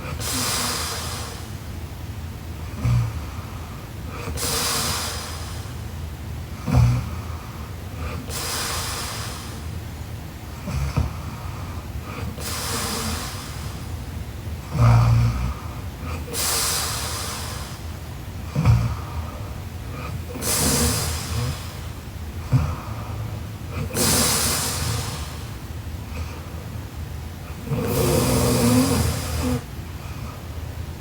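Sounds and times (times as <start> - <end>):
woman snoring: 2.7 - 3.6, 6.6 - 9.4, 14.6 - 17.6, 18.5 - 25.5, 27.5 - 30.4.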